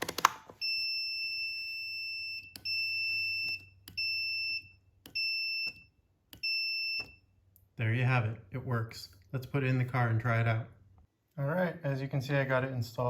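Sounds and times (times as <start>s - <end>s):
multimeter continuity beep: 0.6s - 7.3s.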